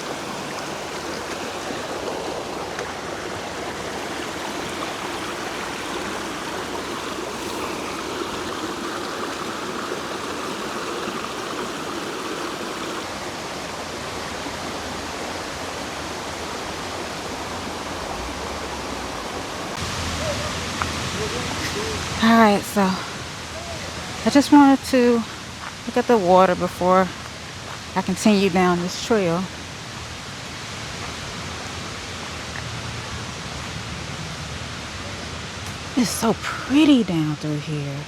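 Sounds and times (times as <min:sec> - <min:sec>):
water rushing over rocks: 0:00.0 - 0:27.9.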